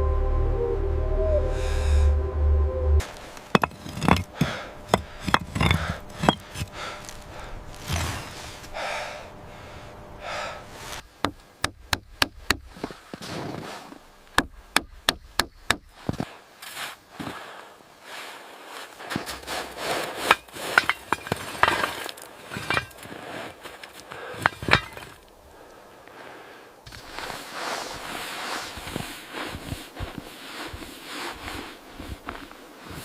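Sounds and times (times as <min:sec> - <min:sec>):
low droning: 0:00.0 - 0:11.0
scraping on wood: 0:03.0 - 0:08.7.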